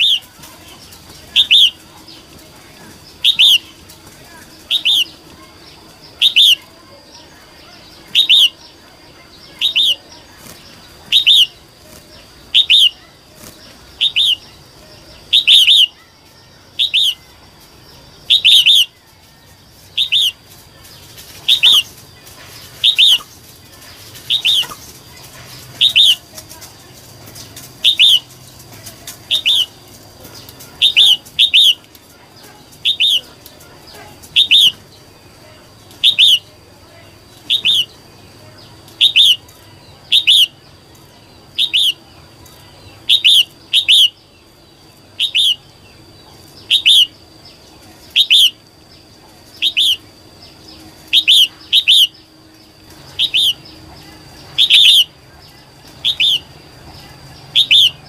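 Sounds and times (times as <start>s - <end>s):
bird giving sharp calls: 0.0s - 1.9s, 3.2s - 3.8s, 4.6s - 5.2s, 6.0s - 6.7s, 7.9s - 8.7s, 9.5s - 11.7s, 12.4s - 14.6s, 15.3s - 16.0s, 16.8s - 17.3s, 18.3s - 19.0s, 19.9s - 20.4s, 21.4s - 26.3s, 27.4s - 28.4s, 29.1s - 29.8s, 30.4s - 31.9s, 32.7s - 34.9s, 36.0s - 36.5s, 37.4s - 38.0s, 39.0s - 39.4s, 40.0s - 40.6s, 41.5s - 42.0s, 43.0s - 44.2s, 45.2s - 45.7s, 46.7s - 47.2s, 48.1s - 48.6s, 49.5s - 50.1s, 51.1s - 52.3s, 53.0s - 55.2s, 55.9s - 56.6s, 57.4s - 58.0s.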